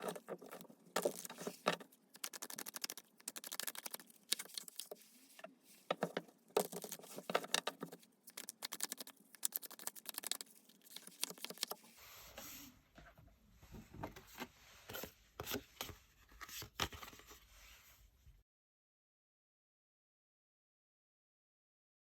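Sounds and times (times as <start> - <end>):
cards being shuffled: 0.0 - 5.0, 6.6 - 11.8.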